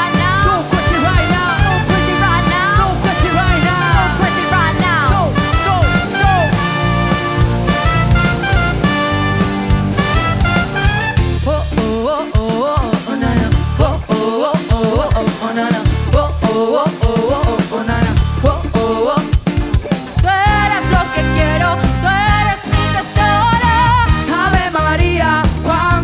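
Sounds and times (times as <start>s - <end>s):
sliding bending lead melody: 0.0s - 12.2s, 20.4s - 25.4s
bass: 0.0s - 12.5s, 13.1s - 14.2s, 15.8s - 26.0s
drum kit: 0.0s - 26.0s.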